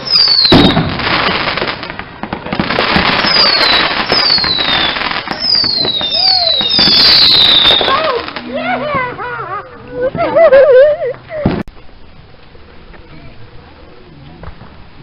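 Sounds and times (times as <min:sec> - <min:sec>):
falling firework whistles: 0:00.0 - 0:01.9, 0:02.7 - 0:08.4
fireworks crackling: 0:00.0 - 0:15.0.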